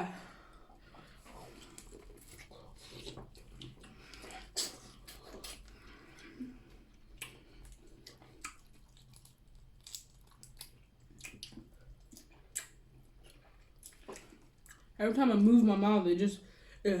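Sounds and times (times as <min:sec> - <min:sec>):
chewing: 0:00.8 - 0:15.0
mouth clicks and smacks: 0:03.0 - 0:05.8, 0:07.1 - 0:09.2, 0:09.9 - 0:14.8.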